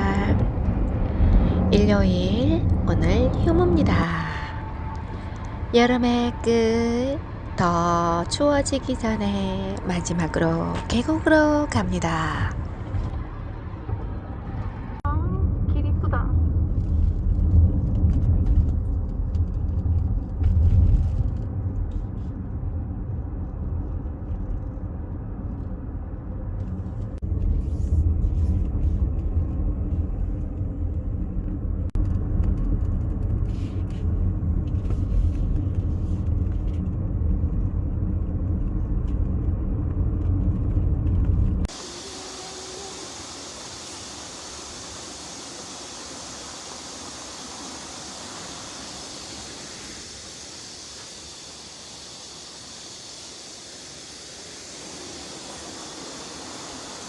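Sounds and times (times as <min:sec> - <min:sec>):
road and engine rumble in car: 0:00.0 - 0:57.0
even rushing hiss: 0:41.7 - 0:57.0.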